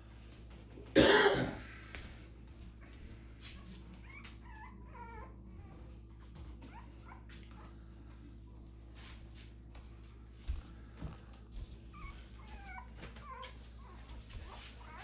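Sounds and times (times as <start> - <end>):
steady low hum: 0.0 - 15.0
faint whimpering whines: 2.3 - 8.6, 10.8 - 15.0.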